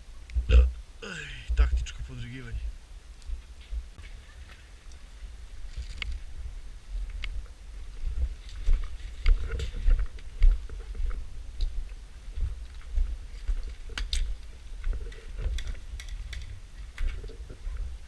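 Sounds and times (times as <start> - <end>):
wind rumbling on microphone: 0.0 - 18.0
sharp clicks and crackles: 5.7 - 6.2, 13.6 - 17.6.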